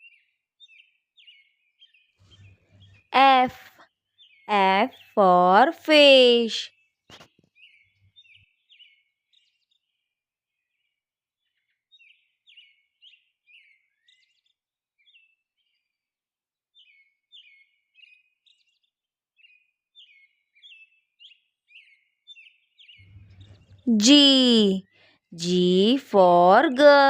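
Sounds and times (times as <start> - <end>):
faint bird chirping: 0.0 - 6.5, 19.5 - 27.0.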